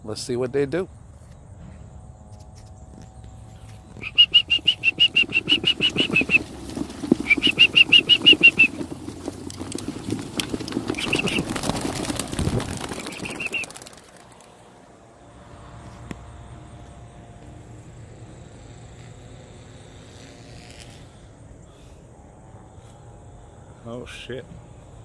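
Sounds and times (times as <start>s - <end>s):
pigeon wings flapping: 3.5s - 14.8s
rapid high chirps: 3.9s - 6.5s, 7.2s - 8.8s, 10.9s - 11.7s, 12.8s - 13.9s.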